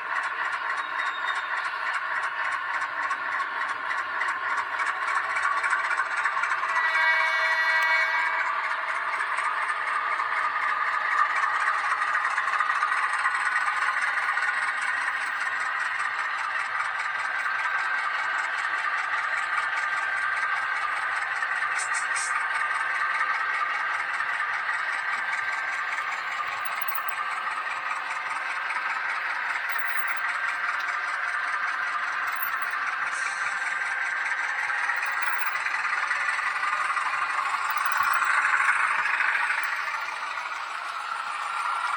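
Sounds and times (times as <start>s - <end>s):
model train motor whirring: 0.0s - 41.9s
wheels clicking on rails: 0.0s - 41.9s.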